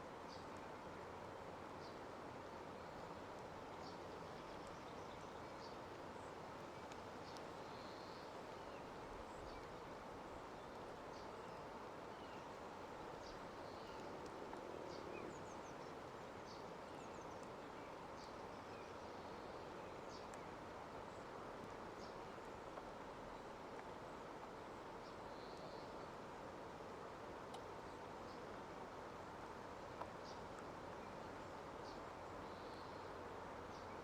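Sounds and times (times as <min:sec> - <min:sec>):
faint rain hiss: 0:00.0 - 0:34.0.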